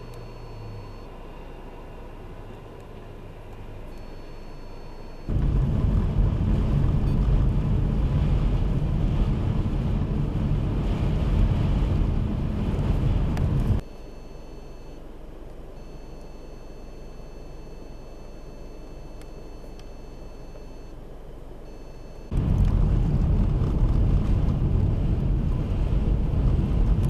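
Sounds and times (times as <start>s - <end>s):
wind buffeting microphone: 5.3s - 13.8s, 22.3s - 27.0s.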